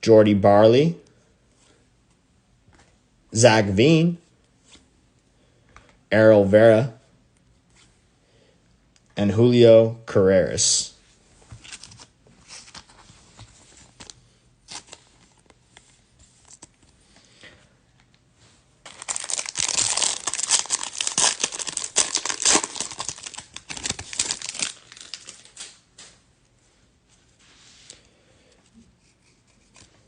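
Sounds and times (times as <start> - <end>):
foil wrapper tearing and crinkling: 18.9 - 25.6.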